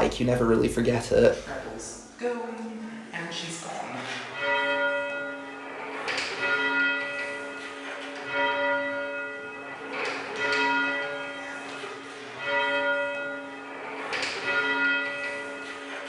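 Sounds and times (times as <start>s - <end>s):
church bells ringing: 4.3s - 16.0s.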